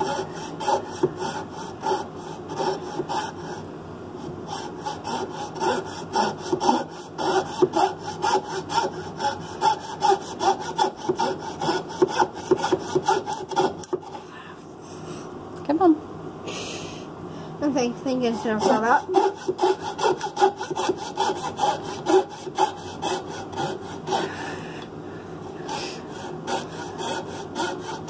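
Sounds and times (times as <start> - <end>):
hand saw cutting wood: 0.0 - 3.7, 4.5 - 14.2, 18.2 - 24.5, 25.5 - 28.0.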